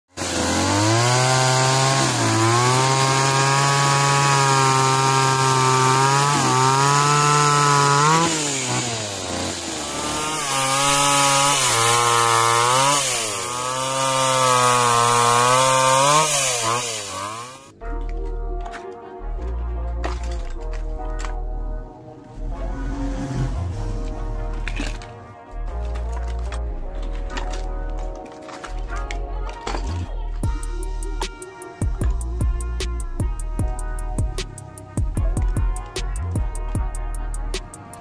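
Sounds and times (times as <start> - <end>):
small two-stroke engine revving: 0.2 - 17.7.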